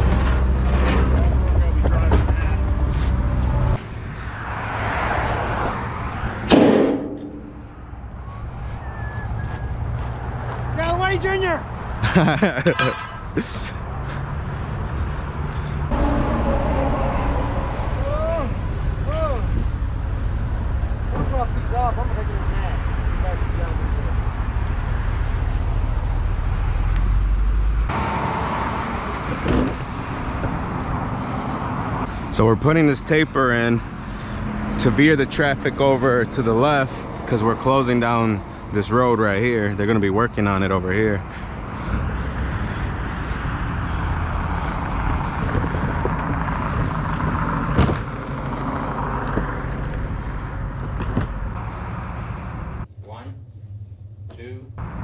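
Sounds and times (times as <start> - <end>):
vehicle engine rumbling: 0.0 - 55.0
hissy roadside noise: 1.5 - 55.0
sharp knock: 6.5 - 7.9.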